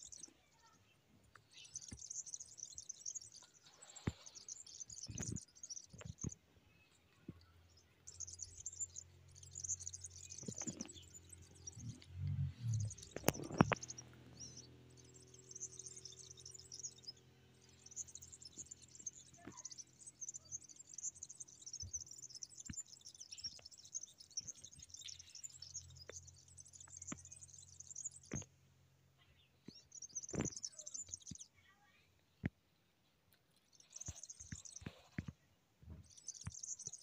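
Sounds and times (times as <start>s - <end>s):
faint low hum: 0.0s - 32.2s
small birds chirping: 0.0s - 37.0s
sharp clicks: 12.8s - 14.2s.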